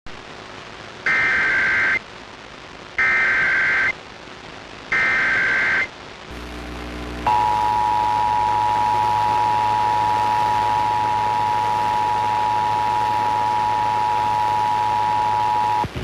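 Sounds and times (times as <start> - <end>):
two-tone alert alarm: 7.3 - 15.8.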